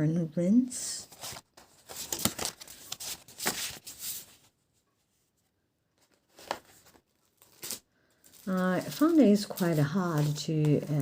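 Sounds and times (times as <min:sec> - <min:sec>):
paper rustling and crinkling: 0:01.1 - 0:04.5, 0:06.0 - 0:11.0.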